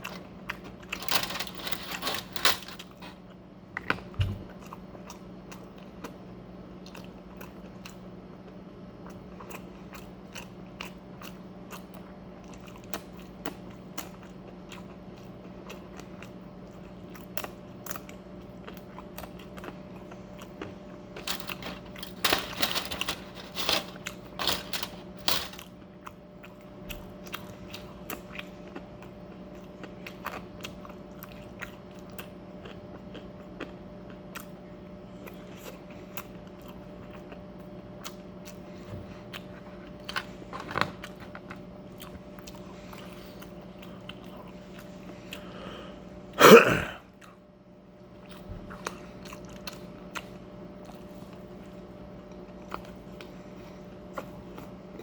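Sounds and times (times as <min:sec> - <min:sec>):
steady low hum: 0:00.0 - 0:55.0
person chewing crunchy food: 0:06.8 - 0:22.3, 0:23.9 - 0:45.6, 0:48.2 - 0:55.0.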